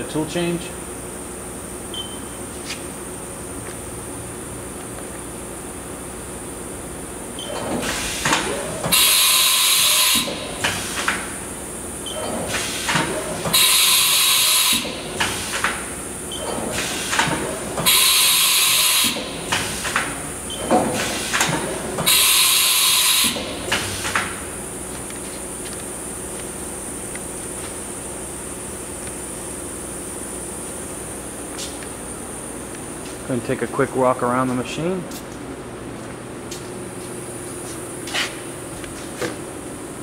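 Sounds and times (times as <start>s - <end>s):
compressed air hissing: 8.9s - 11.1s, 12.5s - 15.6s, 17.9s - 20.0s, 22.0s - 24.2s.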